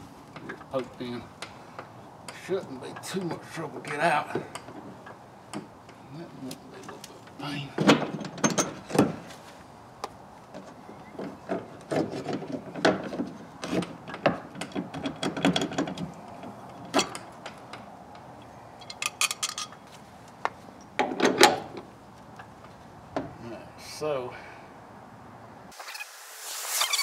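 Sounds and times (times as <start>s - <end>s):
knocks and scrapes of wood and metal: 0.0s - 23.4s.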